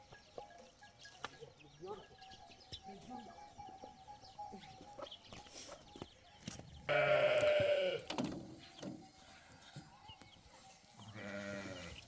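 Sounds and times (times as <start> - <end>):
farm animal bleating: 6.8 - 8.2, 11.0 - 12.0.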